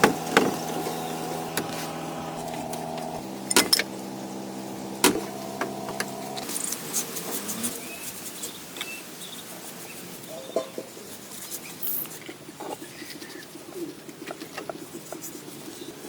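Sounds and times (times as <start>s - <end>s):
birds chirping: 0.0s - 10.9s.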